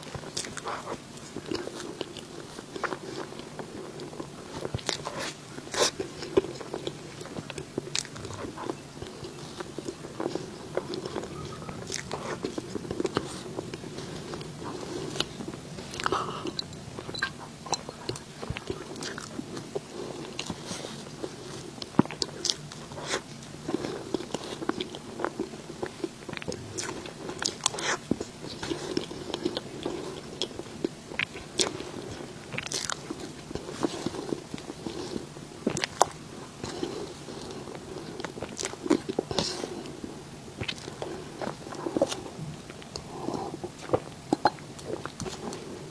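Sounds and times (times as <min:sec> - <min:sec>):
person chewing and crunching: 0:00.0 - 0:45.9
wet mouth clicks: 0:08.0 - 0:20.6.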